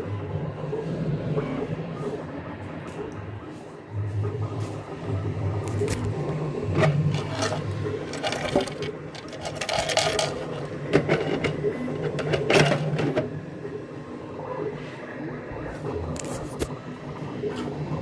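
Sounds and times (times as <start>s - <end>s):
print heads clicking and rattling: 6.8s - 13.4s.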